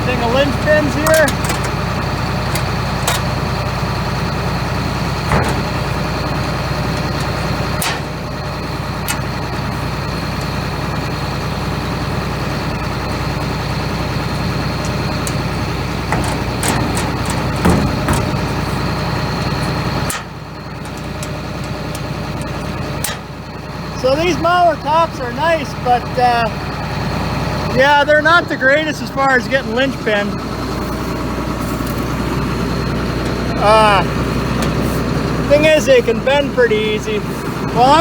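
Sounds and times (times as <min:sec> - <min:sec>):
diesel engine running: 0:00.0 - 0:38.0
metal clicks and knocks: 0:01.0 - 0:03.4, 0:05.0 - 0:08.3, 0:14.3 - 0:23.4.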